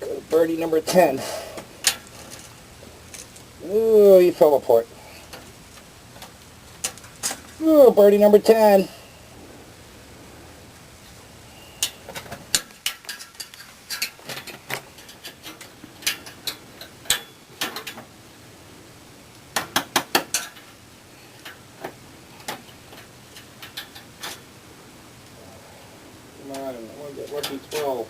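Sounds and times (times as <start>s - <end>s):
metal clicking and scraping: 1.6s - 3.5s, 11.7s - 18.1s, 19.5s - 24.5s.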